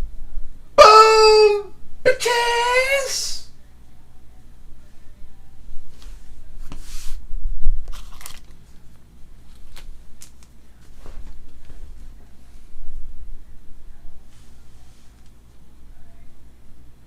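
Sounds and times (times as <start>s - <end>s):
card pack wrappers crinkling: 7.9s - 8.7s.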